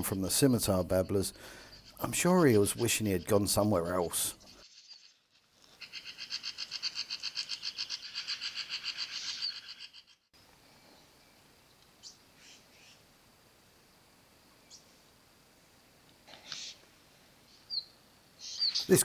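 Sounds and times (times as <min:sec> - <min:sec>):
babblers calling rapid notes: 0:00.4 - 0:05.0
faint short bird calls: 0:16.3 - 0:19.0.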